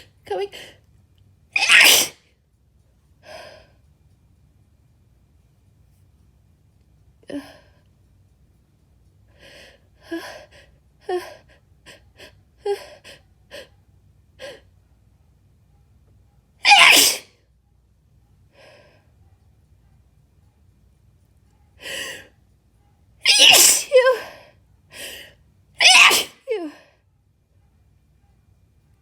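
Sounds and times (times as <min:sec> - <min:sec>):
woman sneezing: 0:01.6 - 0:02.2, 0:16.6 - 0:17.3, 0:23.2 - 0:24.3, 0:25.8 - 0:26.6.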